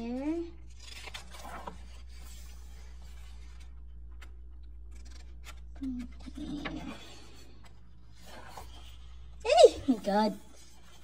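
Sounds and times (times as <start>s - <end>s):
low electrical hum: 0.0s - 11.0s
paper pages rustling: 0.6s - 9.2s.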